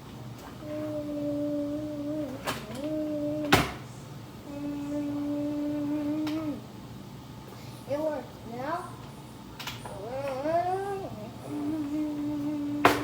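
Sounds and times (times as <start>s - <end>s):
person humming low notes: 0.6s - 3.6s, 4.5s - 6.7s, 10.0s - 13.0s.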